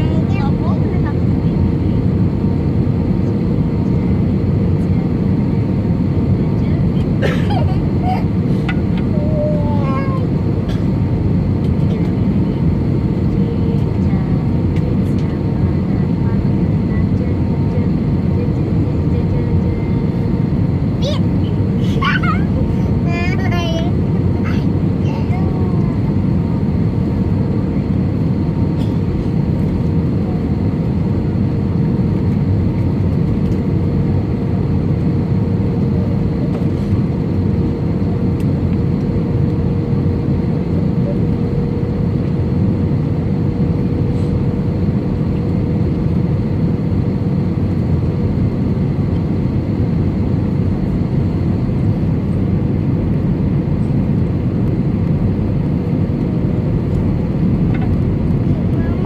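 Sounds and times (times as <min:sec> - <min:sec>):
airplane cabin engine noise: 0:00.0 - 0:59.0.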